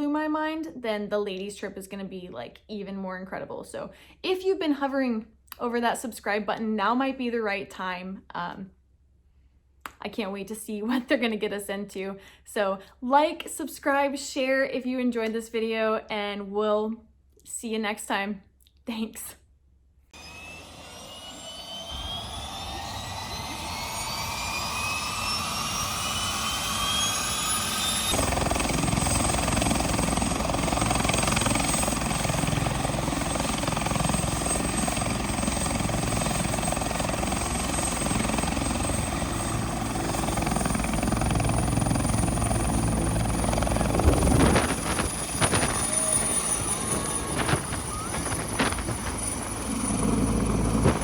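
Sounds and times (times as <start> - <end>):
helicopter turbine whine: 20.2 - 51.0
helicopter rotor churning: 21.3 - 51.0.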